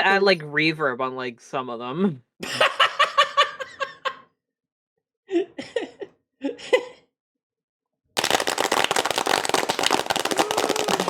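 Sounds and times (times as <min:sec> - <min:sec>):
layered hand clapping: 0:08.2 - 0:11.0.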